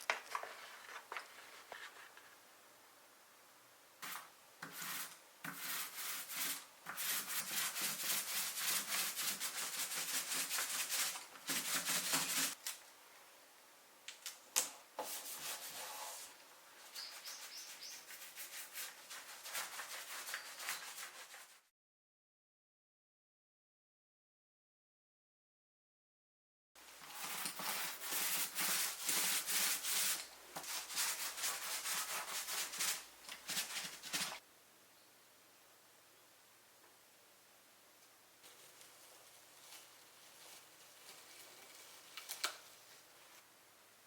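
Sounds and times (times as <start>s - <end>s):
fast rubbing strokes on a surface: 4.0s - 12.6s, 17.0s - 21.7s, 27.1s - 34.4s.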